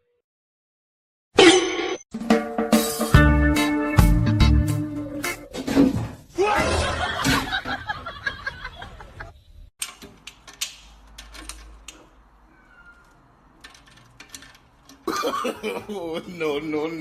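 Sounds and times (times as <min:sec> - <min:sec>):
person laughing: 0:06.4 - 0:09.4, 0:15.1 - 0:17.0.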